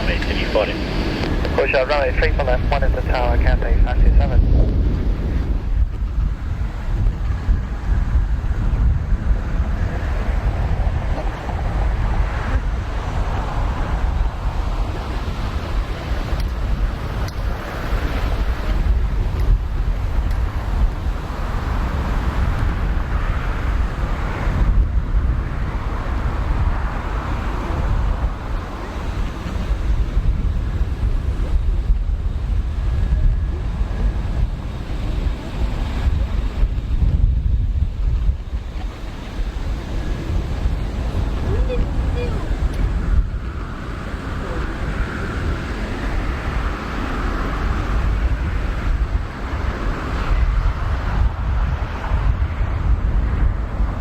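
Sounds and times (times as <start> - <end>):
jet engine hiss: 0.0 - 8.4
wind buffeting microphone: 0.0 - 54.0.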